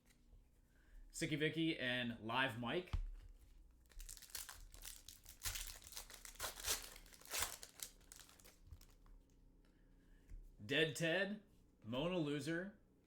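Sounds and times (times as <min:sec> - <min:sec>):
card pack wrapper crinkling and tearing: 0:03.8 - 0:09.1.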